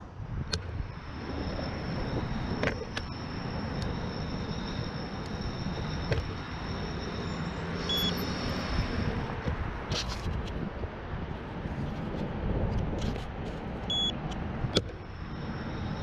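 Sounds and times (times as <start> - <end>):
faint high whine: 0.0 - 10.0, 13.8 - 16.0
road and wind rumble: 0.0 - 16.0.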